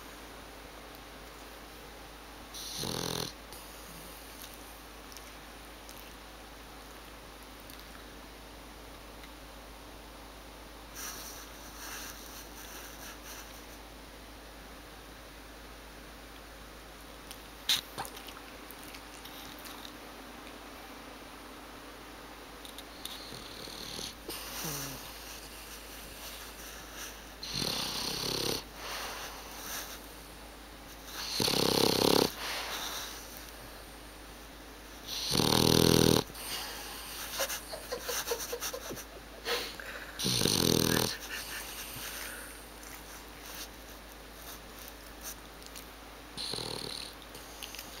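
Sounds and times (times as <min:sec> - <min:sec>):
pet snoring: 0:02.6 - 0:03.4, 0:23.0 - 0:30.0, 0:31.1 - 0:33.2, 0:35.1 - 0:37.5, 0:40.2 - 0:42.5, 0:46.4 - 0:47.8.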